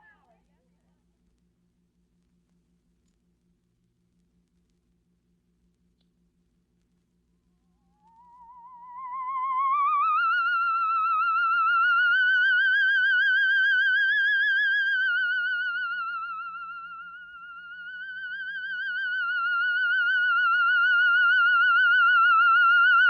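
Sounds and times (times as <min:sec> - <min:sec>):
eerie wavering electronic tone: 0:07.8 - 0:23.0.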